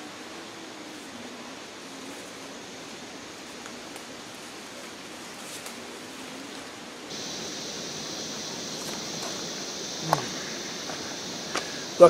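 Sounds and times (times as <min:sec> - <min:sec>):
rainforest ambience: 0:01.8 - 0:12.0
steady high hiss: 0:07.1 - 0:12.0.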